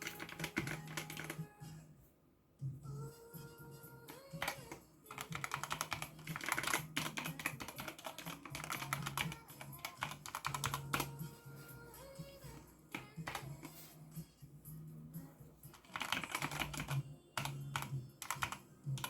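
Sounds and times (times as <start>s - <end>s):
mechanical keyboard clacking: 0.0s - 1.4s, 4.4s - 11.1s, 15.8s - 19.0s.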